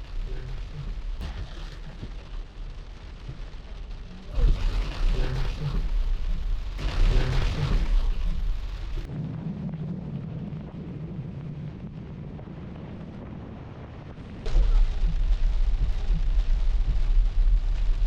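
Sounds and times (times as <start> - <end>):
heavy rain: 0.0 - 18.0
low hum: 0.0 - 18.0
thunder rumbling: 0.0 - 18.0.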